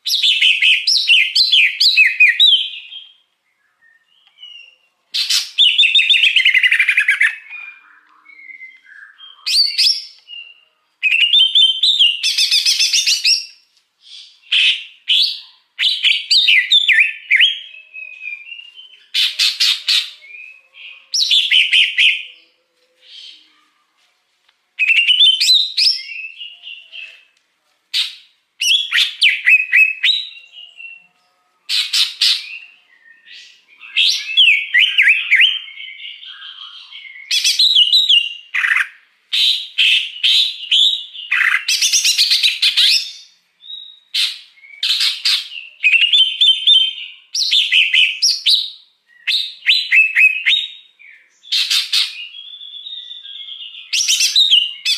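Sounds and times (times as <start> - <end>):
bird singing: 0.0 - 23.8, 24.8 - 27.4, 28.0 - 54.9.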